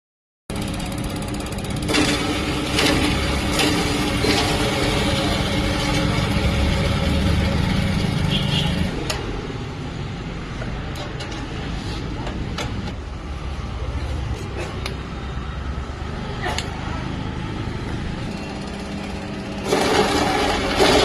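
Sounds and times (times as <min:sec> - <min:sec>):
chopping machine motor humming: 0:00.5 - 0:09.6, 0:14.4 - 0:21.0.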